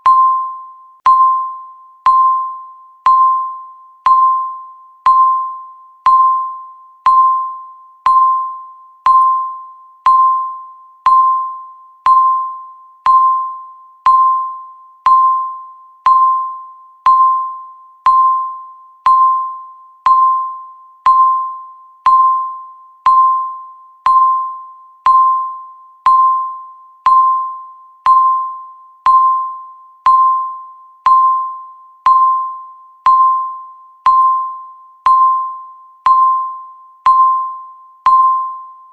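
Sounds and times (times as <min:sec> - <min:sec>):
timer electronic beeps: 0:00.0 - 0:38.9.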